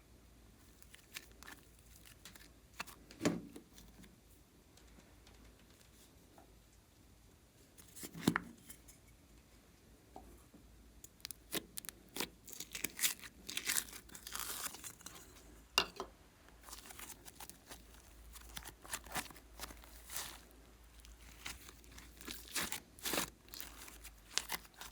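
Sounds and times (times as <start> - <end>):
slime crinkling and crackling: 0.6 - 3.0, 11.1 - 15.4, 16.6 - 24.9.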